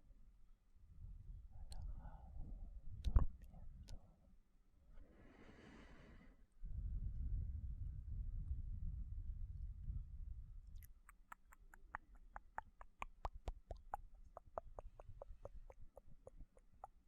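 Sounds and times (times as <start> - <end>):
wet tongue and lip clicks: 10.7 - 17.0.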